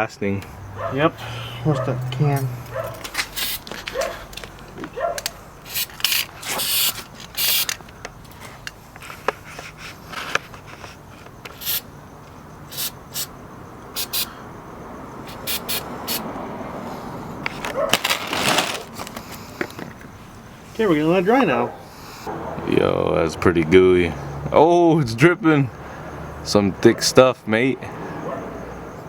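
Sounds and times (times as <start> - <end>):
aerosol can spraying: 3.3 - 3.7, 5.7 - 7.8, 11.5 - 11.8, 12.7 - 13.3, 14.0 - 14.3, 15.3 - 16.3.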